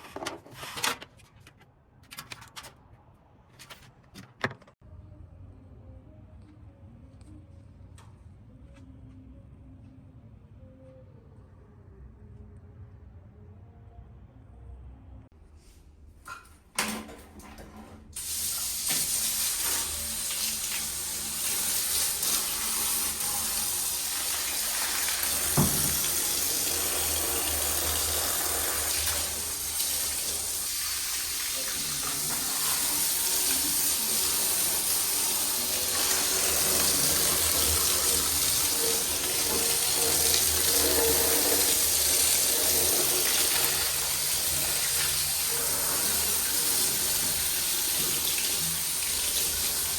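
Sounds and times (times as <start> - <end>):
water running from a tap: 18.2 - 49.9.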